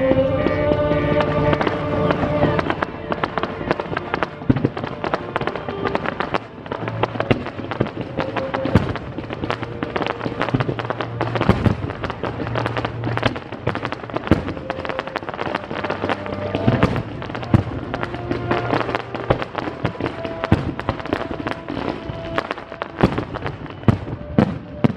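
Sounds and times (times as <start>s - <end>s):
music over loudspeakers: 0.0s - 13.0s
fireworks bursting: 0.0s - 24.9s.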